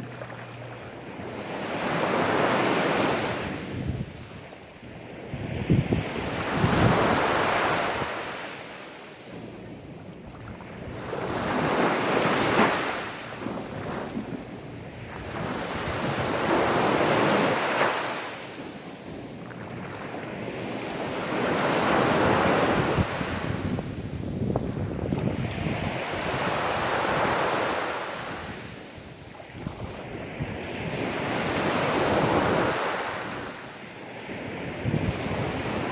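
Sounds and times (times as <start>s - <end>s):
sea waves washing onto beach: 0.0s - 35.9s.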